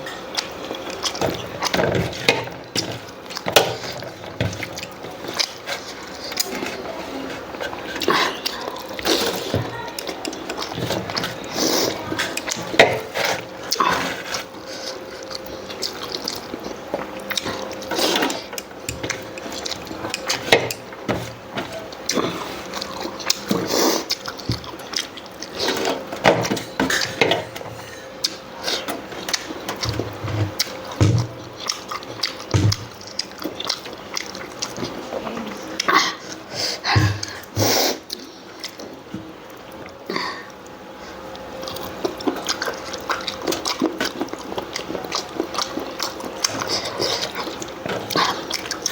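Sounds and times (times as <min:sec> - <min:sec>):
wet chewing and lip smacks: 0:14.4 - 0:20.8, 0:31.6 - 0:36.0, 0:38.1 - 0:48.9.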